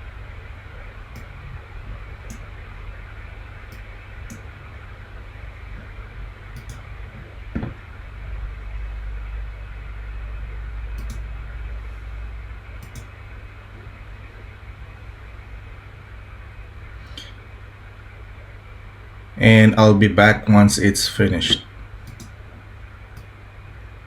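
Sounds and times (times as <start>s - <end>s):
room hum and hiss: 0.0s - 24.0s
faint clicks: 1.1s - 1.4s, 6.5s - 7.4s, 11.0s - 11.3s, 12.8s - 13.2s, 22.0s - 22.4s.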